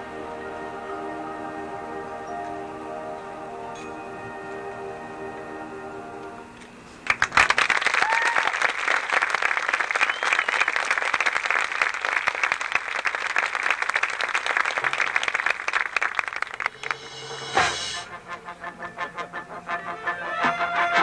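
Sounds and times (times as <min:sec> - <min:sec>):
audience applauding: 0:07.0 - 0:17.3.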